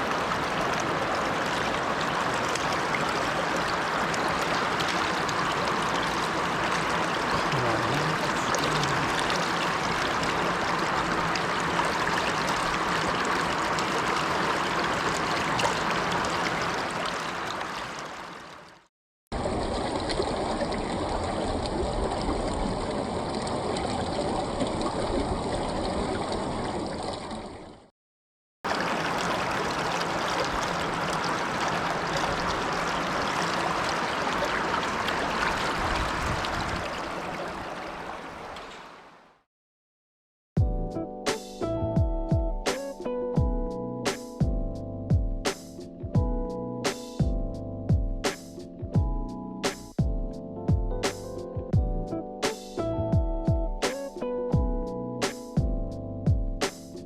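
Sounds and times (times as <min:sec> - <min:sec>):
mountain stream rushing: 0:00.0 - 0:27.4, 0:28.7 - 0:39.3.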